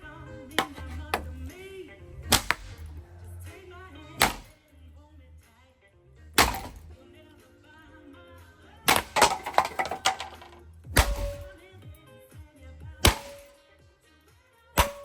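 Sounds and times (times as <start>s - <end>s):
music: 0.0s - 15.0s
ceiling fan being struck and broken: 0.6s - 1.6s, 2.2s - 3.0s, 4.2s - 4.6s, 6.4s - 7.0s, 8.9s - 11.7s, 13.0s - 13.6s, 14.8s - 15.0s.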